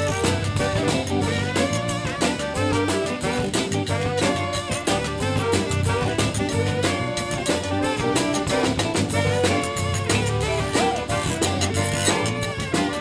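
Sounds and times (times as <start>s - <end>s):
live band playing: 0.0s - 13.0s.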